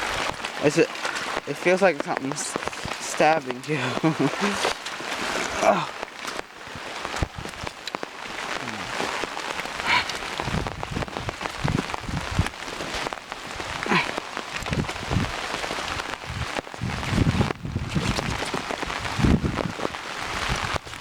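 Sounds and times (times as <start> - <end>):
splashing hissing water: 0.0 - 6.0.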